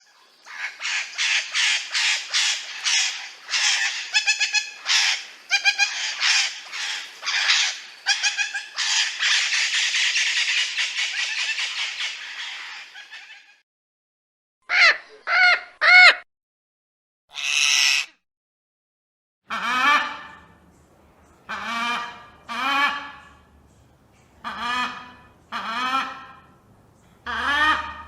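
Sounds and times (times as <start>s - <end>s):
parrot squawking: 0.5s - 13.5s, 17.3s - 18.2s.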